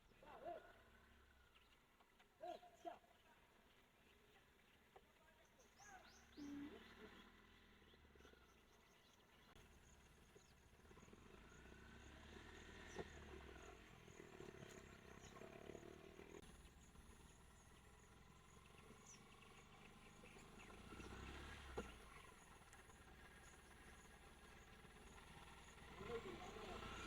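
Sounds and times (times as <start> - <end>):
insects chirping: 8.8 - 27.0.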